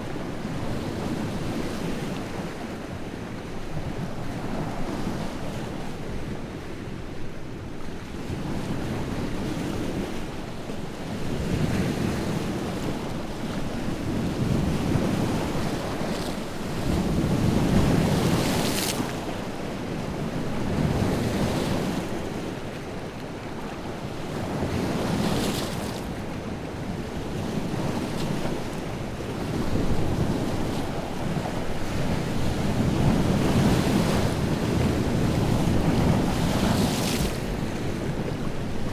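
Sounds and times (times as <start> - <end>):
lake waves breaking on shore: 27.7 - 38.9.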